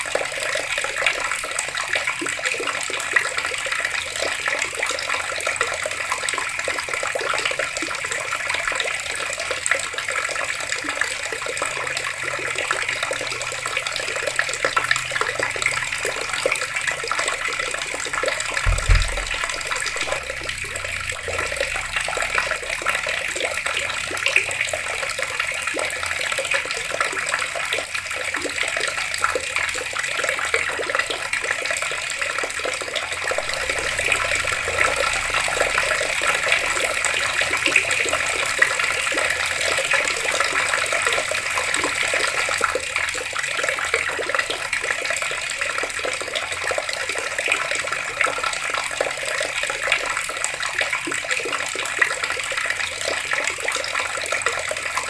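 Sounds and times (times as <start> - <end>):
water running from taps: 0.0 - 55.0.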